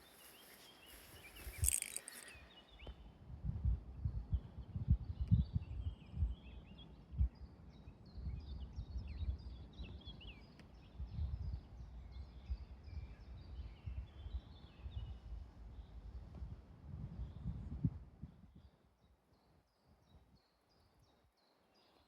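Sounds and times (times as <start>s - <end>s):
small songbirds chirping: 0.0s - 3.2s, 4.0s - 16.4s
wind rumbling on microphone: 1.0s - 18.8s.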